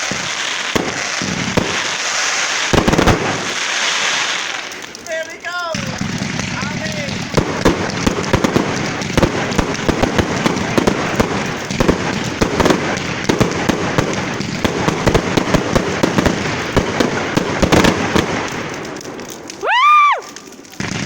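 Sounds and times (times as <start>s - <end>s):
fireworks crackling: 0.0s - 21.0s
fireworks pops: 0.0s - 21.0s.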